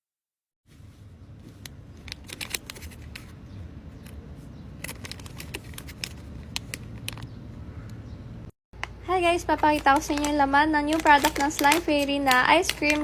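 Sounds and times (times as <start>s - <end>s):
plastic packaging clicks and crinkles: 1.6s - 3.4s, 4.8s - 7.3s, 8.8s - 13.0s.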